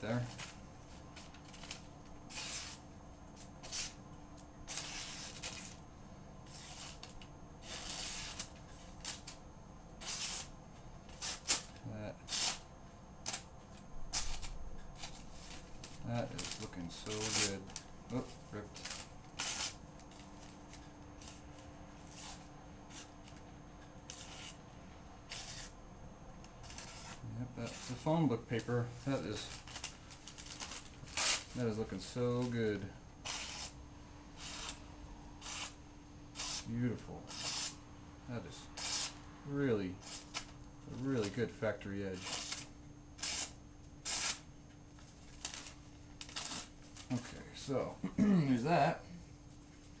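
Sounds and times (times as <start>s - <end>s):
knife slicing paper: 1.5s - 2.8s, 3.6s - 4.0s, 4.7s - 5.8s, 6.5s - 9.4s, 10.0s - 10.5s, 14.2s - 20.2s, 24.1s - 24.6s, 25.3s - 25.7s, 26.6s - 28.1s, 33.2s - 33.8s, 36.4s - 36.7s, 37.3s - 37.8s, 42.2s - 44.4s.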